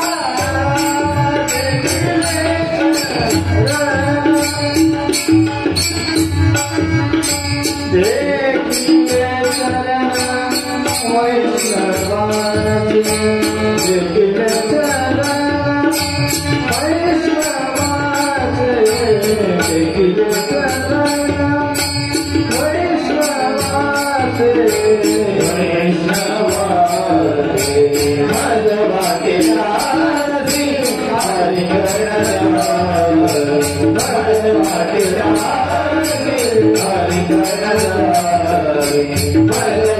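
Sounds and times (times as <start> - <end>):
jingling hand cymbals: 0.0 - 39.9
man singing: 0.0 - 39.9.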